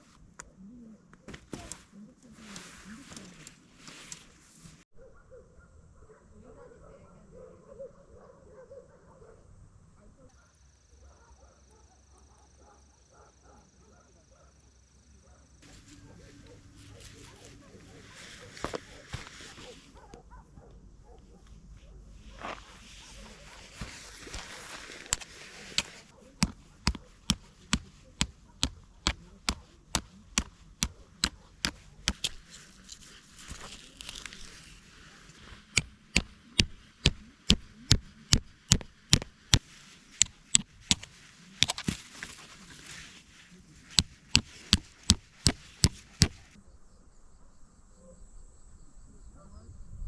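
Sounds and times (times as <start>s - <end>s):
rustling: 0.0s - 4.9s, 15.1s - 46.6s.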